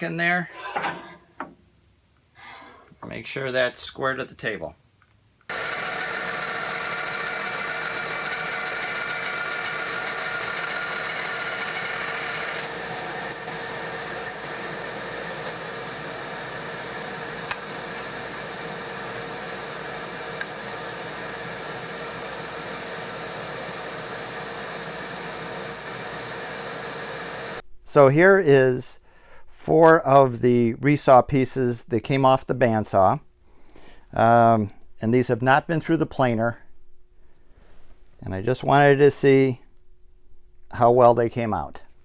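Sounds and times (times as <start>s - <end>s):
bandsaw cutting wood: 5.5s - 27.6s.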